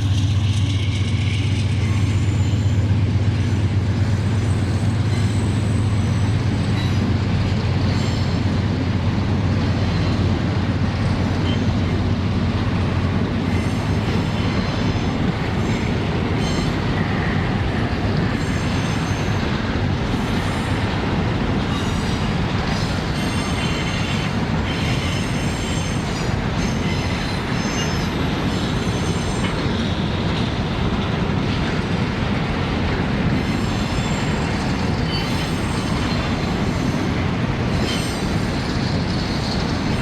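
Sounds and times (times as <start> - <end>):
locomotive engine droning: 0.0 - 40.0
faint wheel squeal: 1.6 - 3.1, 4.4 - 7.1, 33.4 - 37.0.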